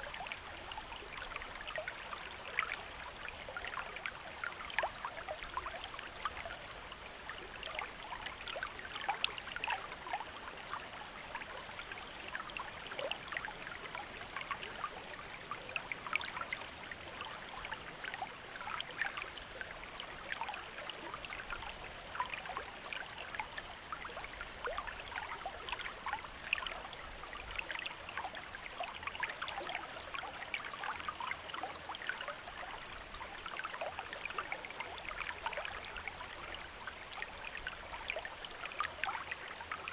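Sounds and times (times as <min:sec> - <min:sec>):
stream trickling and burbling: 0:00.0 - 0:39.9.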